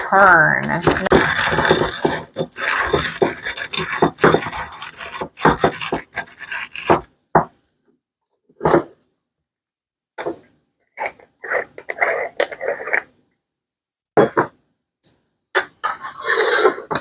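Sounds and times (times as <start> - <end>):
hand coffee grinder grinding: 0.7 - 7.1
short scrapes: 0.9 - 7.1.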